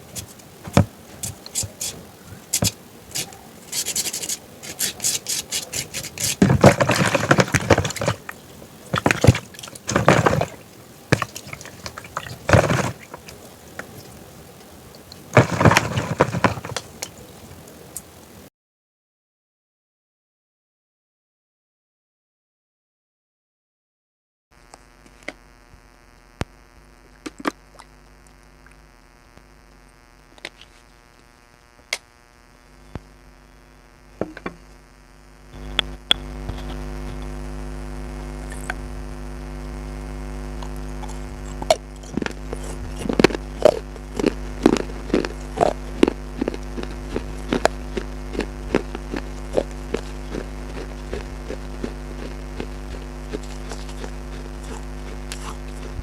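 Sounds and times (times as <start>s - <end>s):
mains hum: 0.0s - 18.5s, 24.5s - 56.0s
food crunching being chewed: 5.6s - 17.4s, 40.5s - 56.0s.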